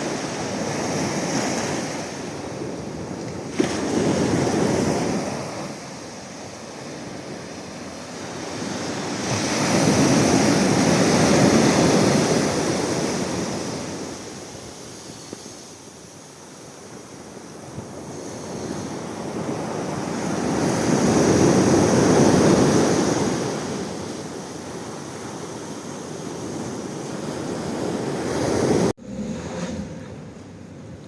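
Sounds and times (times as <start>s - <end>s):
sea surf washing in: 0.0s - 15.8s.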